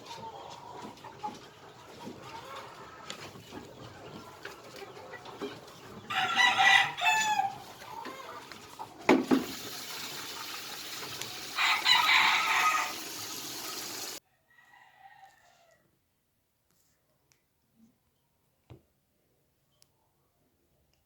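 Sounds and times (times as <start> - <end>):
loud fowl calls: 1.8 - 14.2.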